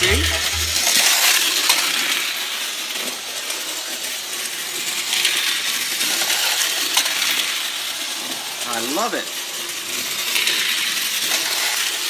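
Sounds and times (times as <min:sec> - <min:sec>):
toy train rattling on metal track: 0:08.1 - 0:12.0.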